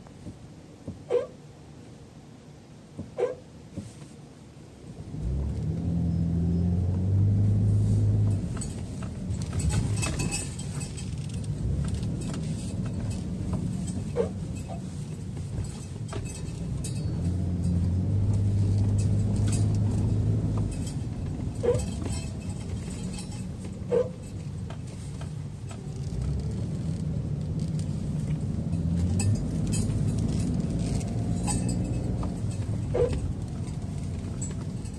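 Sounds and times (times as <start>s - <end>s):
low brake hum: 0.0s - 34.9s
short squeaks: 8.3s - 25.1s, 28.8s - 34.9s.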